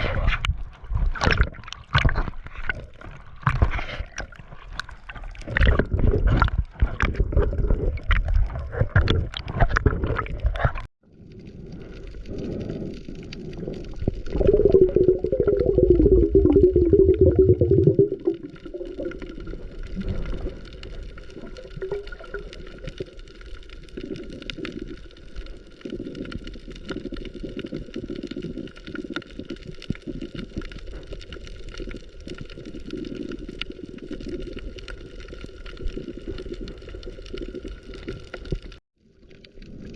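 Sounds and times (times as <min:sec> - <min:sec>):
water splashing and gurgling: 0:00.0 - 0:39.9
bubbles gurgling: 0:00.9 - 0:10.9, 0:13.6 - 0:23.9.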